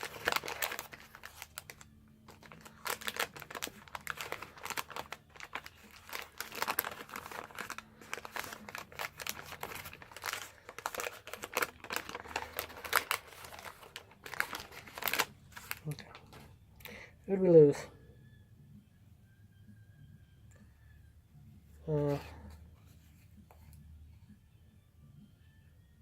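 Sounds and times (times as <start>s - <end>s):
cards and paper packaging rustling: 0.0s - 16.5s.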